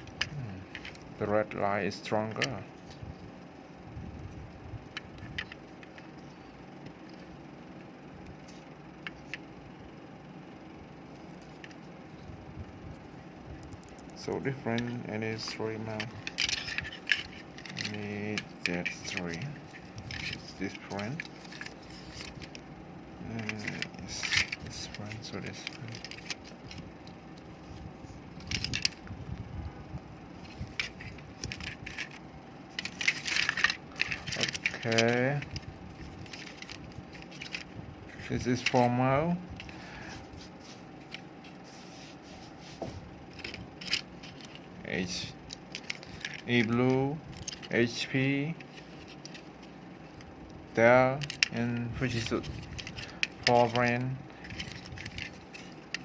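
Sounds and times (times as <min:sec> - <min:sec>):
low background hum: 0:00.0 - 0:56.0
plastic mouse parts clicking: 0:14.8 - 0:22.6, 0:23.4 - 0:27.2, 0:30.4 - 0:37.7, 0:51.2 - 0:56.0.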